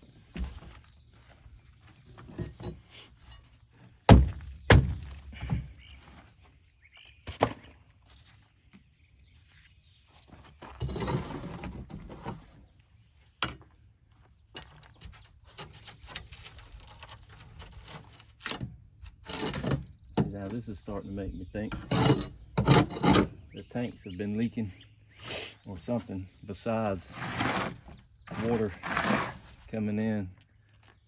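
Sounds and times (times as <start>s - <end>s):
heavy thuds of wood: 4.1s - 5.8s
rough scraping crumbling noise: 9.5s - 12.8s, 14.5s - 24.5s, 25.7s - 31.0s.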